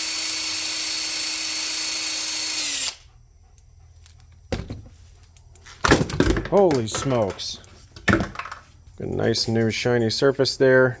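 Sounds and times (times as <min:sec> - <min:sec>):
drill running: 0:00.0 - 0:03.0.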